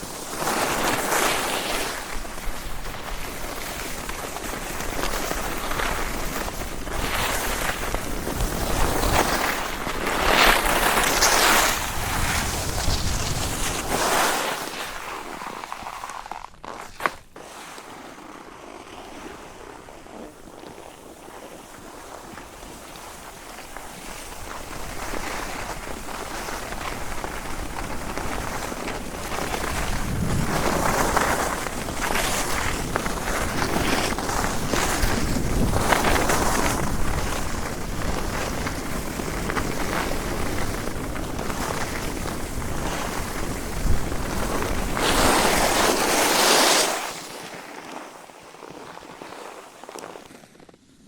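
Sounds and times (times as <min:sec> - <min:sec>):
wind on microphone: 0:00.0 - 0:15.1, 0:24.2 - 0:46.6
skis scraping on snow: 0:00.0 - 0:51.0.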